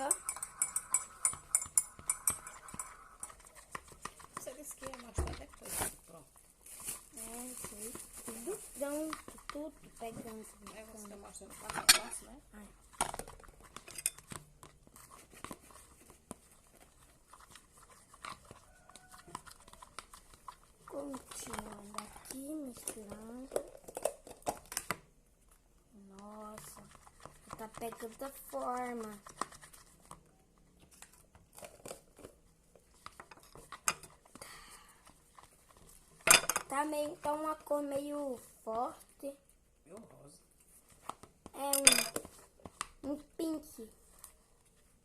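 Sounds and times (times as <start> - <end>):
spoon clicking and scraping bowl: 0.0 - 5.6, 8.9 - 24.8, 26.5 - 30.2.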